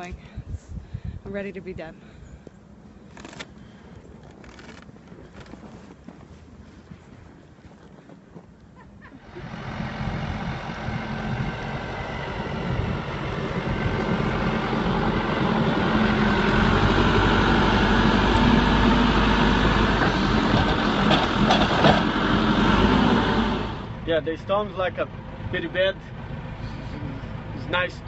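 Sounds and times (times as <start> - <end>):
engine running: 9.2 - 28.0.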